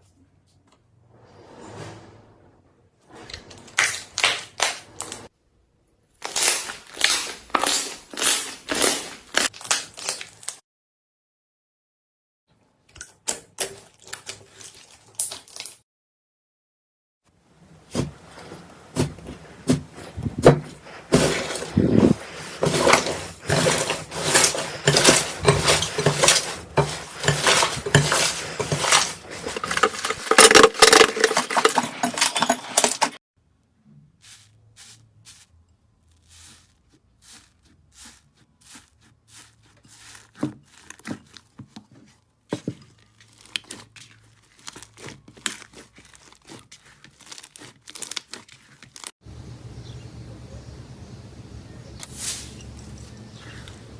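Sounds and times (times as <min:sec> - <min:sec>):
slime crackling and popping: 0:43.0 - 0:49.1.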